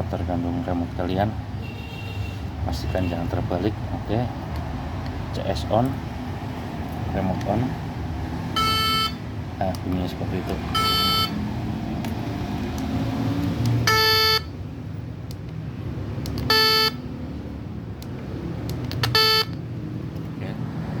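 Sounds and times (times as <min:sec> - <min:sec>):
electronic horn toots: 0:08.6 - 0:09.2, 0:10.7 - 0:11.4, 0:13.8 - 0:14.5, 0:16.5 - 0:17.0, 0:19.0 - 0:19.6.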